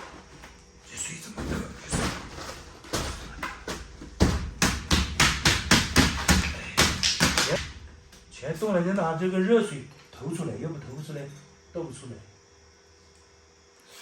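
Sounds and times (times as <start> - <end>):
hard knocks: 1.8 - 7.8.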